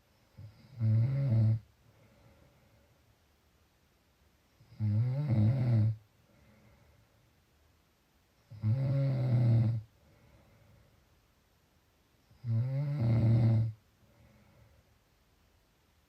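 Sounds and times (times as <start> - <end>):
loud rattling snores: 0.4 - 1.6, 4.7 - 6.0, 8.5 - 9.8, 12.4 - 13.8
faint breathing: 1.8 - 3.3, 6.1 - 7.4, 9.8 - 11.2, 13.9 - 15.1.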